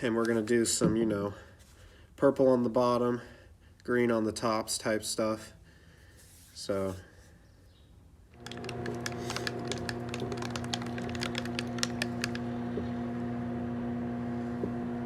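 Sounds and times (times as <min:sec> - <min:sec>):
electrical appliance humming: 0:08.3 - 0:15.0.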